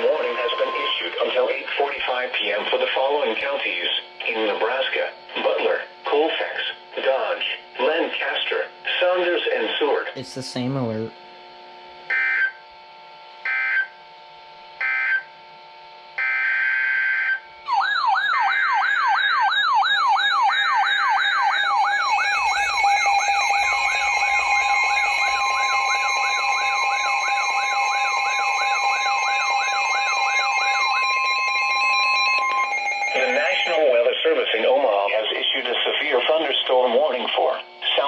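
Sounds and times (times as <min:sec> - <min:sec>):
repeating siren-like wail: 0:00.0 - 0:01.5, 0:16.2 - 0:34.0
buzzing digital header data: 0:21.7 - 0:34.0
steady two-note alert tone: 0:32.3 - 0:33.8.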